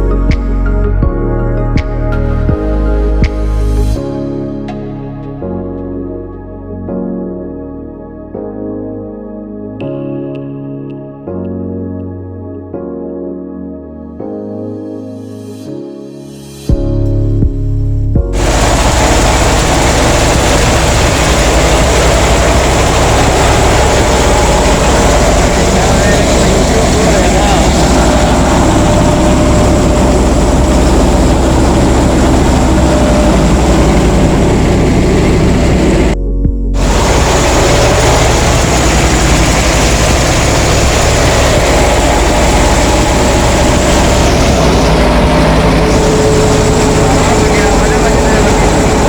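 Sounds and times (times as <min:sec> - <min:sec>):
heavy engine beat: 0:18.2 - 0:49.0
harvesting machinery noise: 0:18.4 - 0:36.2, 0:36.8 - 0:49.0.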